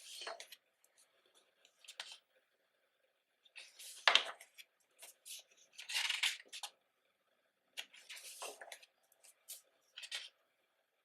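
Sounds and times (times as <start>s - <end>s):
pages turning and rustling: 0.0s - 2.2s, 3.5s - 6.8s, 7.8s - 10.4s.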